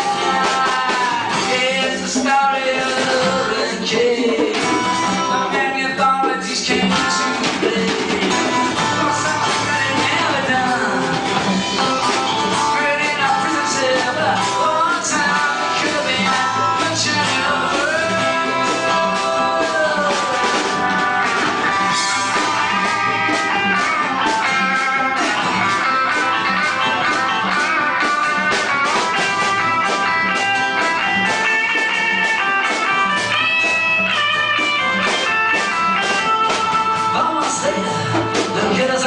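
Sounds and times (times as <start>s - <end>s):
lead guitar: 0.0s - 39.0s
live rock band playing: 0.0s - 39.0s.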